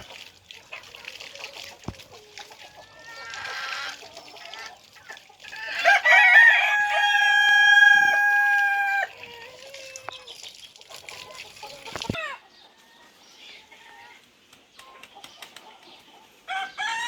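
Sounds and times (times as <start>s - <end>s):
chickens clucking: 0.0s - 17.0s
rooster crowing: 5.7s - 9.2s, 16.5s - 17.0s.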